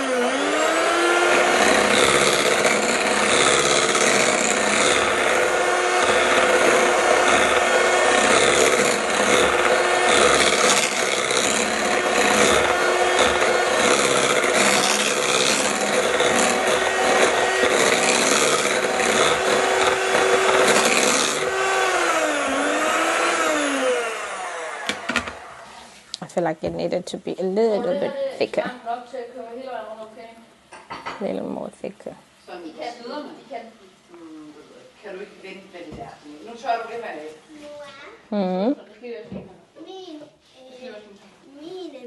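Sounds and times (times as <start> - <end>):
kitchen appliance motor humming: 0.0 - 25.8.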